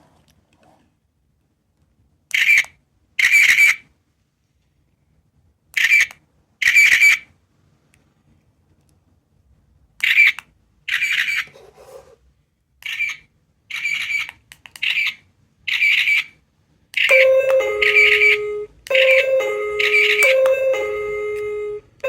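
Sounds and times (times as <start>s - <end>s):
squeaky electronic chirps: 17.0s - 20.6s
two-note electronic chime: 17.1s - 22.0s.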